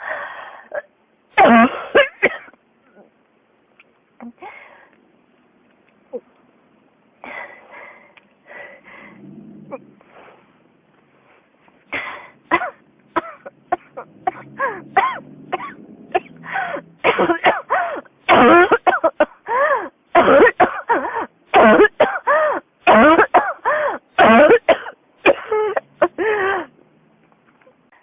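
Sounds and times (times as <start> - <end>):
person coughing: 0.8 - 2.6, 11.9 - 19.4, 20.2 - 26.4.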